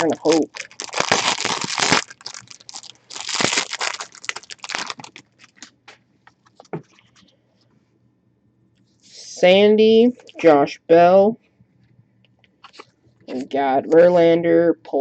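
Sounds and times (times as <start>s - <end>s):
foil wrapper crinkling and tearing: 0.0s - 5.8s.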